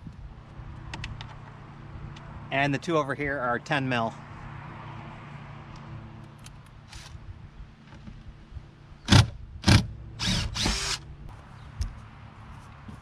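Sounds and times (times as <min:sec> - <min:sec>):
cordless power drill running: 0:09.7 - 0:11.0.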